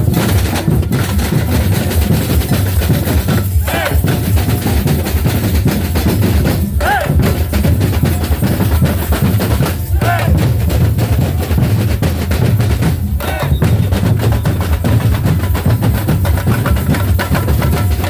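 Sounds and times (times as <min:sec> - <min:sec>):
bass drums and snares: 0:00.0 - 0:18.0
whistle-like tones: 0:13.2 - 0:14.7.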